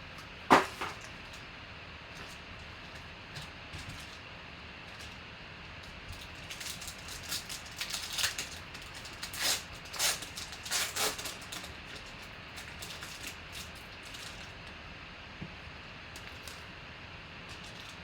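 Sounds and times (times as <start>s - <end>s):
packaging rustling and crinkling: 0.5s - 1.4s, 2.2s - 4.2s, 6.1s - 14.6s, 17.5s - 18.0s.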